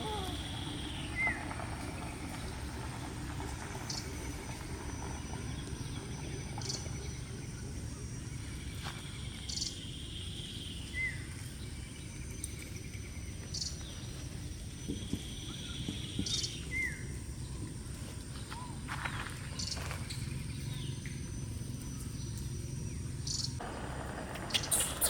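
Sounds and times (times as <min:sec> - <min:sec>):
insects droning: 0:00.0 - 0:25.0
low steady rumble: 0:20.2 - 0:25.0.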